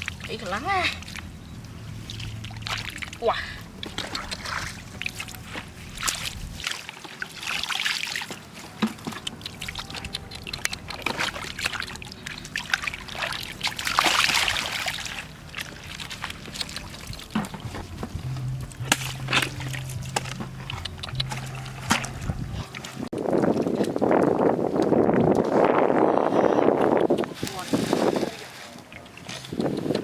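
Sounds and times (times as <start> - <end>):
water trickling and pouring: 0.0 - 25.4
splashing in shallow muddy water: 0.0 - 30.0.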